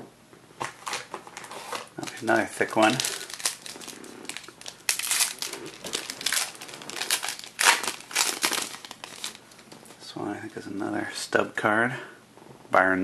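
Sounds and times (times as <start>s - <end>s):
wrapper crinkling and tearing: 0.6s - 10.0s.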